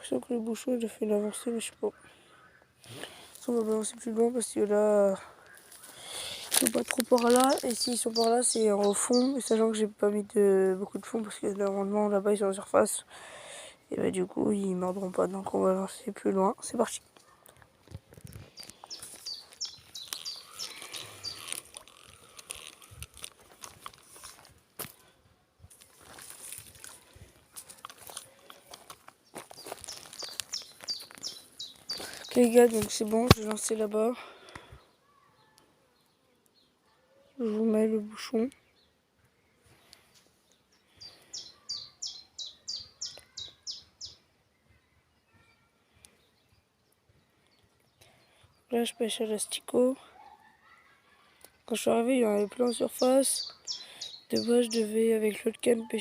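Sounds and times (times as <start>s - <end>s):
faint outdoor background noise: 0.0s - 56.0s
small bird chirping: 5.4s - 9.9s, 18.2s - 23.3s, 29.2s - 33.8s, 38.3s - 46.7s, 51.9s - 56.0s
songbird singing falling notes: 5.4s - 9.9s, 18.1s - 23.3s, 29.2s - 33.9s, 39.9s - 48.1s, 52.4s - 54.9s.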